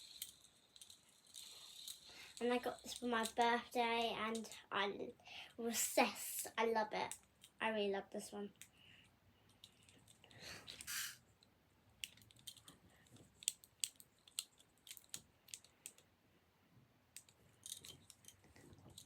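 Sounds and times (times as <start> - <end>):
plastic toys clicking and tapping: 0.0 - 4.6, 9.5 - 16.1, 17.2 - 19.0.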